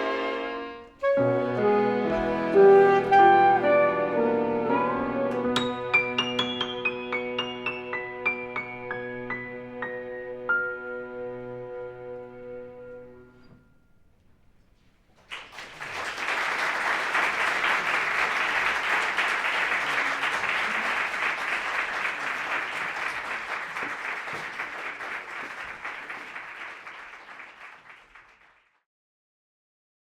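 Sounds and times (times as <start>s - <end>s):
audience applause: 15.2s - 28.7s.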